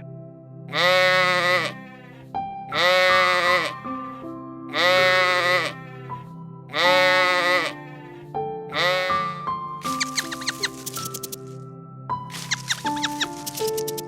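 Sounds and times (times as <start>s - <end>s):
background music: 0.0s - 14.0s
long bleats: 0.7s - 9.5s.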